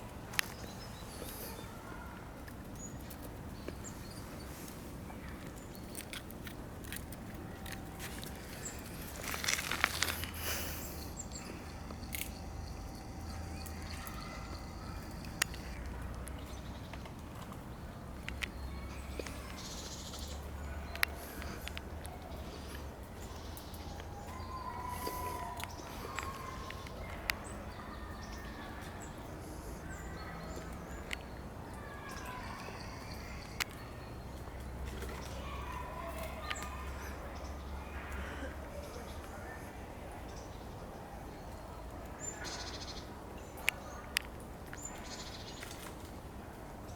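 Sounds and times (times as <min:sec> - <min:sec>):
faint birds chirping: 0:00.0 - 0:46.9
faint crackles: 0:00.1 - 0:39.6
low outdoor rumble: 0:03.4 - 0:40.2
steady low rumble: 0:07.8 - 0:17.0.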